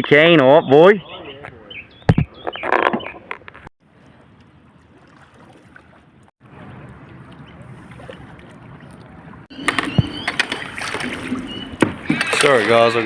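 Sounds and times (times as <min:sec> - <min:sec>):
boat running on water: 0:03.8 - 0:13.0.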